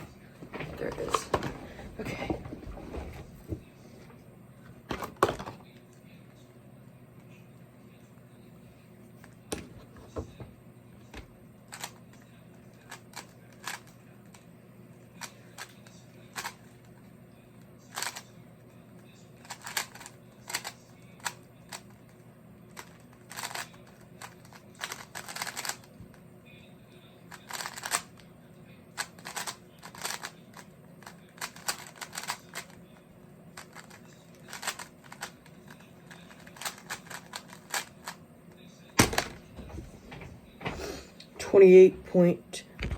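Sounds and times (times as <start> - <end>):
plastic puzzle cube clicking: 22.8 - 25.9, 27.4 - 28.1, 29.0 - 30.3, 31.0 - 32.8, 33.6 - 38.2.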